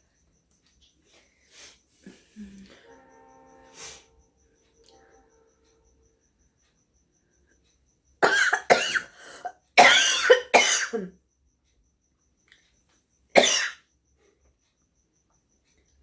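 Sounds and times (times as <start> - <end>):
woman clearing nose and throat: 8.3 - 11.2.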